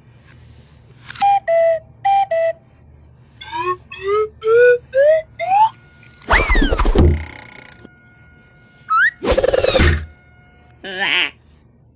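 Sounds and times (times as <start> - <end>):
whistle-like gliding notes: 1.2 - 2.7, 3.4 - 7.9, 8.8 - 9.9.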